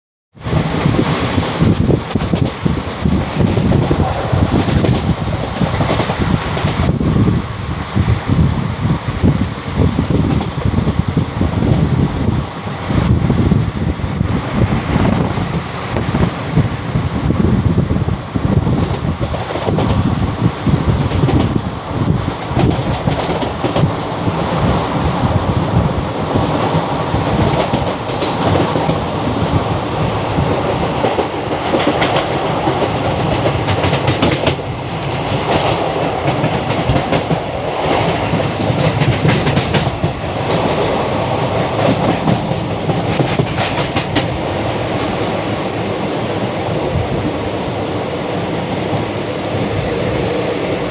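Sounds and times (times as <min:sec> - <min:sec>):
train wheels rumbling on rails: 0:00.4 - 0:50.9
sharp track clicks: 0:01.5 - 0:07.0, 0:22.3 - 0:24.6, 0:26.4 - 0:46.3.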